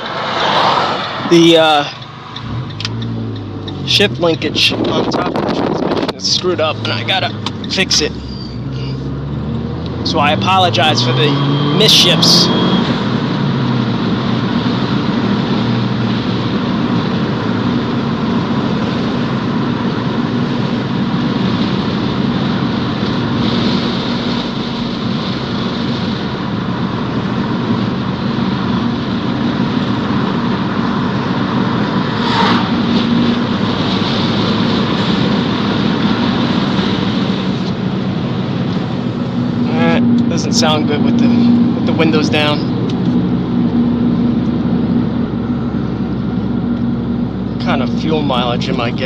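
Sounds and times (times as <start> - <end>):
car engine cruising: 0.0 - 49.0
wind and road noise: 0.0 - 49.0
turbo whistle: 8.1 - 8.9.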